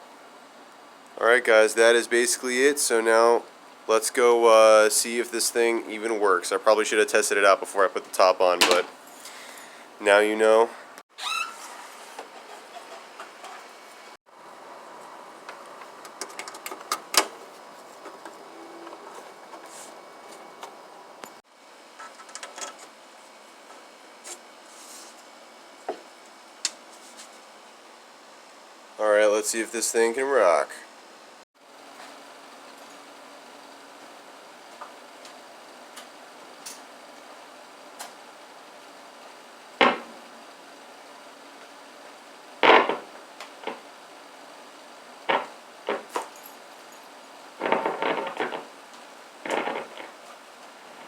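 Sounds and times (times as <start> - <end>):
dull thump: 45.3 - 46.2
hard objects knocking and clattering: 45.3 - 46.4, 47.6 - 48.7, 49.4 - 50.2
rubbing: 49.4 - 50.2.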